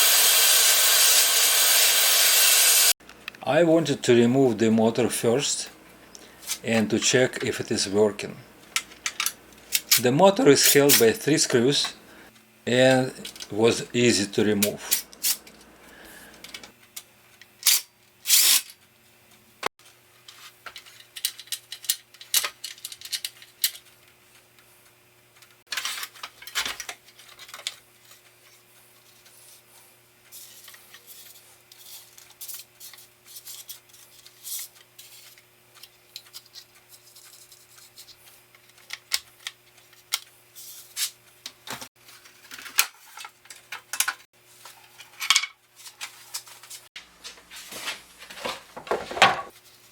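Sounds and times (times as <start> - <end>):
faint steady hum: 3.0 - 25.6
screwdriver and metal parts clicking: 20.8 - 23.8.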